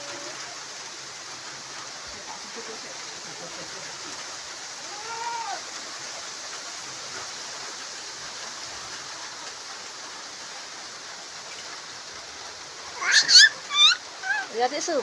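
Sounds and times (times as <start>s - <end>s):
light drizzle: 0.0s - 15.0s
call rising and falling: 13.0s - 14.5s.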